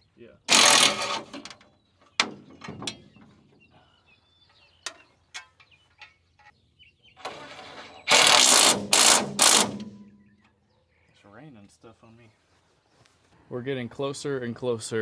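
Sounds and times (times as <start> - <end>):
metal parts and tools clicking: 0.5 - 3.3, 7.2 - 10.0.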